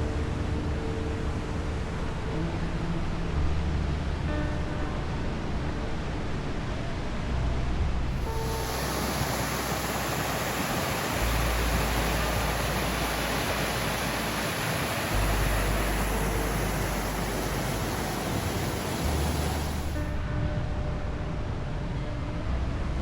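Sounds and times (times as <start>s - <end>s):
creek water rushing: 8.2s - 20.2s.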